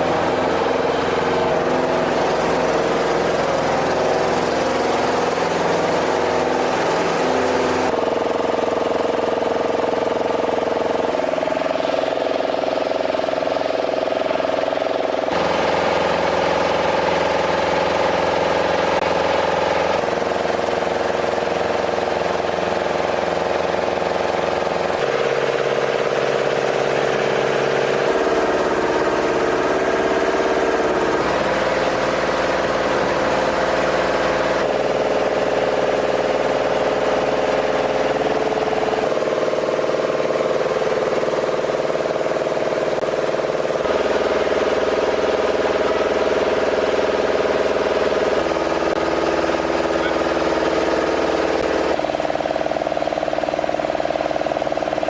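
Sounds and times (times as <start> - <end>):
mechanical engine drone: 0.0 - 55.0.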